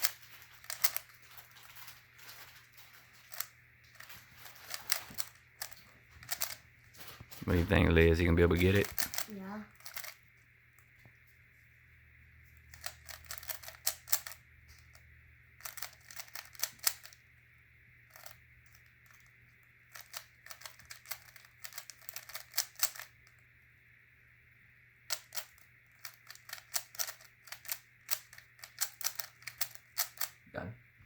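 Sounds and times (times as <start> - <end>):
plastic puzzle cube clicking: 0.0 - 1.8, 3.3 - 6.6, 8.6 - 10.2, 12.7 - 15.0, 15.6 - 17.2, 18.1 - 19.3, 19.9 - 23.4, 25.1 - 30.4.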